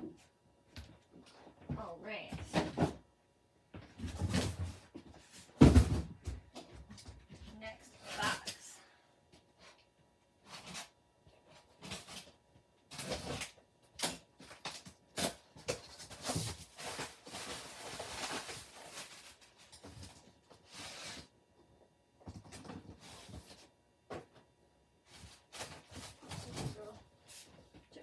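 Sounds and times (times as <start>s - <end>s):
cardboard packaging knocks and clicks: 3.8s - 7.1s
packaging rustling and scraping: 10.4s - 21.4s, 22.2s - 24.3s, 25.1s - 27.7s.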